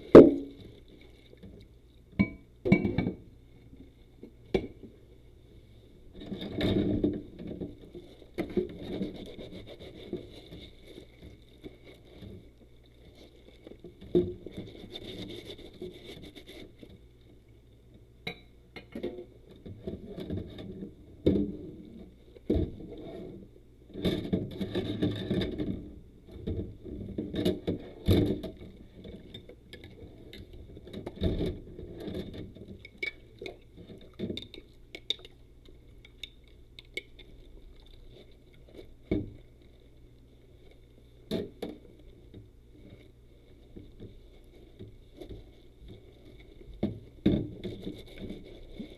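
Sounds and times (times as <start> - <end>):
rubber gloves rubbing and scrubbing: 8.8 - 12.1, 14.6 - 16.8, 43.0 - 48.9.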